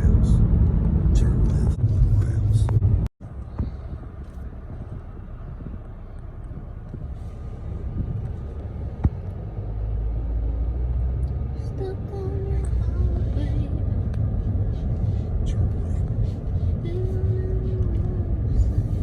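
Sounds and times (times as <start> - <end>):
large vehicle rumble: 0.0 - 19.0.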